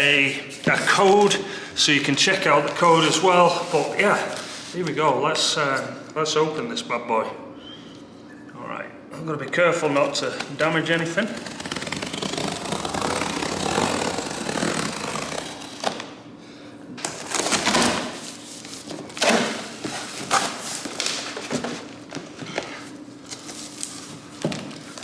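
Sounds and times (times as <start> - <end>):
cardboard scraping and rustling: 11.2 - 16.1.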